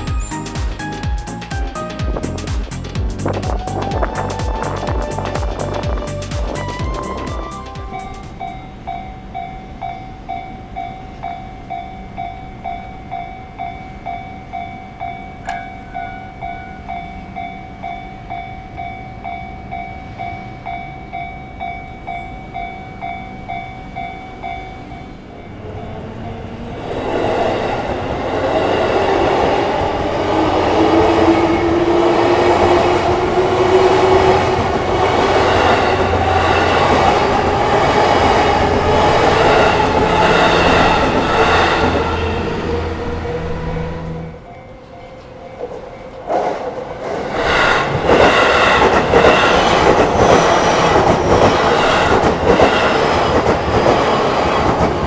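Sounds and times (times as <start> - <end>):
level-crossing bell ringing: 0.0 - 2.2, 3.4 - 25.6
train passing loudly: 0.0 - 55.0
train whine rising in pitch: 3.2 - 9.6, 24.4 - 45.0.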